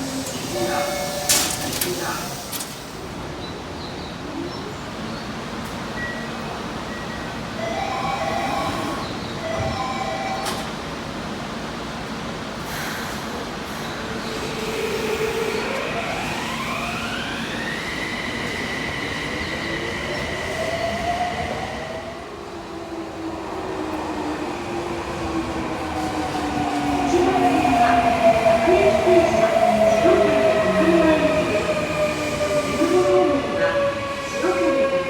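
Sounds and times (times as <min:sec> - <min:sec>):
train cars rumbling: 0:00.0 - 0:35.0
electric train motors whining: 0:14.5 - 0:19.4.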